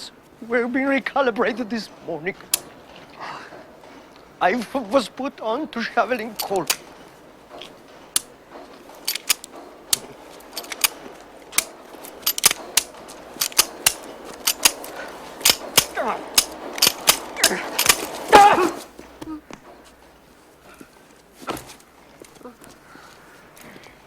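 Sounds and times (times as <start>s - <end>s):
pistol trigger clicks: 9.1s - 18.1s.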